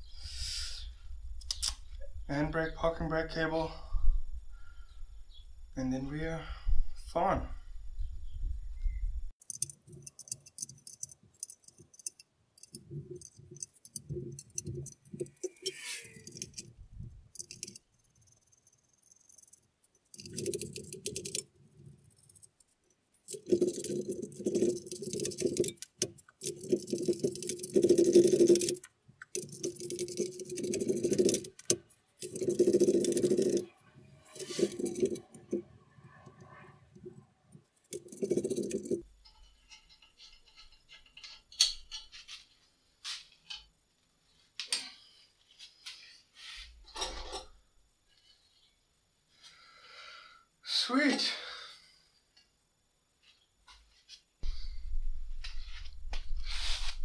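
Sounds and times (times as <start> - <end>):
metal parts clinking: 9.4 - 35.6, 37.6 - 42.2.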